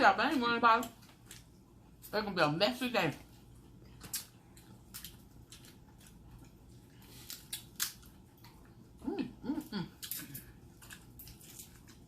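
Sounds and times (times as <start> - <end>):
eating crab clicks and smacks: 7.2 - 8.6.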